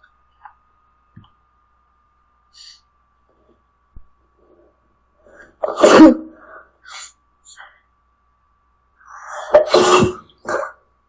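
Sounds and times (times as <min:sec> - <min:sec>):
girl sneezing: 0:05.6 - 0:06.4, 0:09.4 - 0:10.8.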